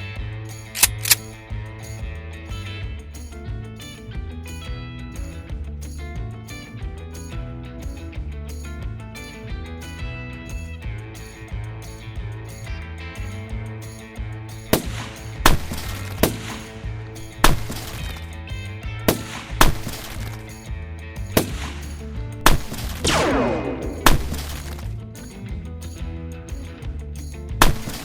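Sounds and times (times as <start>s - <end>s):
background music with a beat: 0.0s - 28.0s
sharp bangs: 21.4s - 24.9s.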